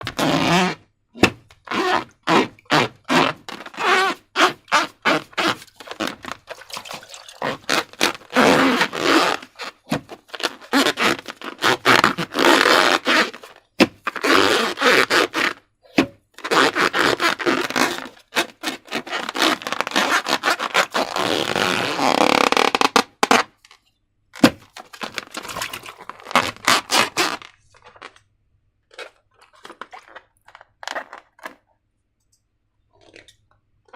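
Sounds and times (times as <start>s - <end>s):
slime scraping and crackling: 1.7s - 15.6s, 24.4s - 28.2s, 28.9s - 31.6s.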